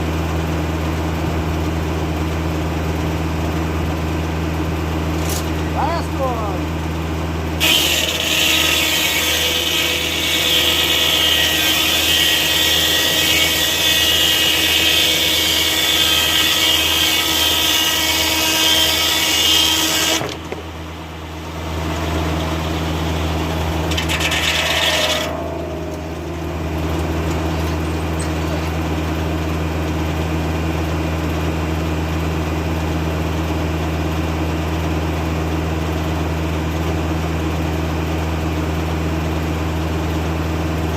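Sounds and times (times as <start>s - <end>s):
tractor diesel engine running: 0.0s - 18.5s, 19.6s - 40.9s
saw blade spinning freely: 7.6s - 20.3s, 21.8s - 29.0s
circular saw blade cutting log: 7.6s - 29.8s.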